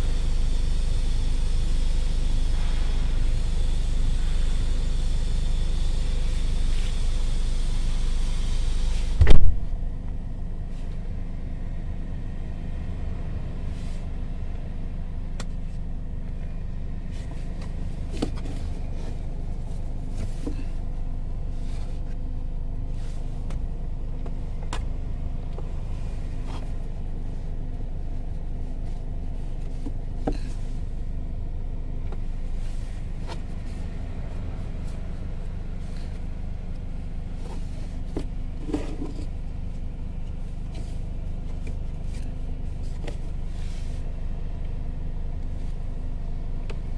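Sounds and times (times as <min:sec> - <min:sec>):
car engine idling: 0:00.0 - 0:46.9
loud thump: 0:09.2 - 0:09.8.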